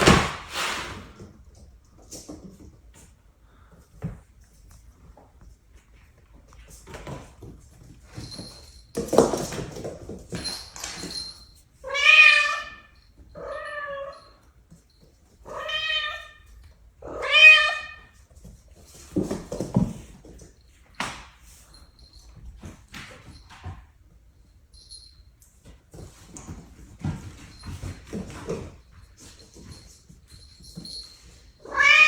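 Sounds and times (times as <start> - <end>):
rustling and scuffling: 0.0 - 12.0, 18.0 - 32.0
cat meowing: 11.8 - 14.3, 15.5 - 18.1, 31.6 - 32.0.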